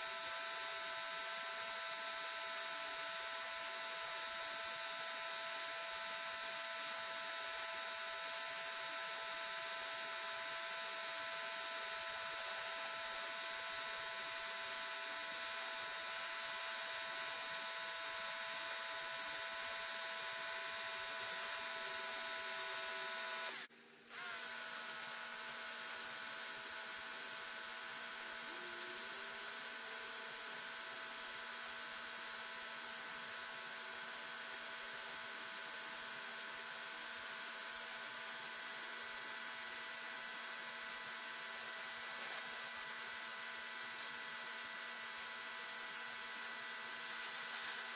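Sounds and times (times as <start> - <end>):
pressure washer whine: 38.8 - 47.9.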